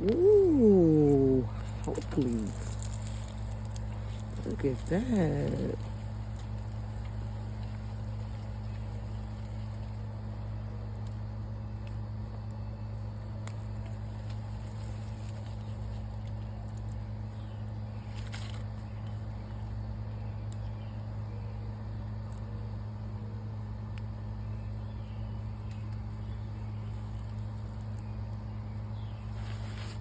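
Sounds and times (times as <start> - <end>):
low mechanical hum: 0.0 - 30.0
short rustle: 29.2 - 30.0.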